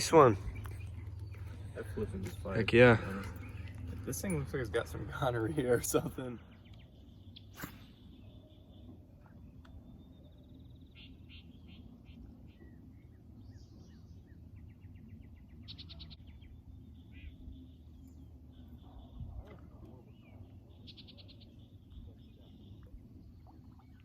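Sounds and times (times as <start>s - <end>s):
low wind rumble: 0.0s - 17.8s
songbirds singing: 0.0s - 24.0s.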